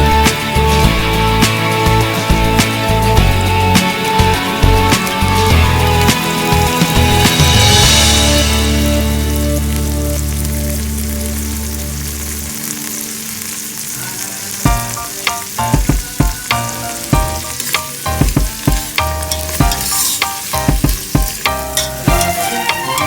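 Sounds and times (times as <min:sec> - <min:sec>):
food sizzling in a pan: 0:00.0 - 0:23.0
utensil clanking against pan: 0:18.7 - 0:23.0.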